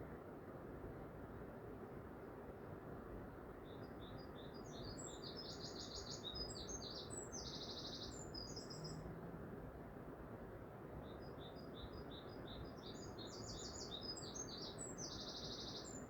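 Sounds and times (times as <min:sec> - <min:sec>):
low background hiss: 0:00.0 - 0:16.0
songbird chirping and trilling: 0:04.0 - 0:09.0, 0:11.1 - 0:16.0.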